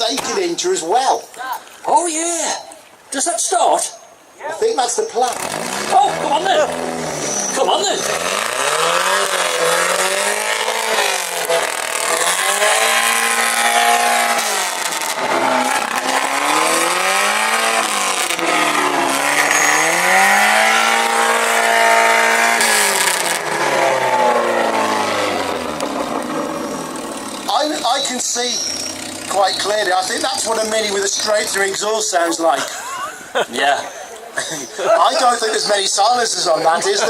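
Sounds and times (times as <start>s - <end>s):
loud engine revving: 5.2s - 31.7s.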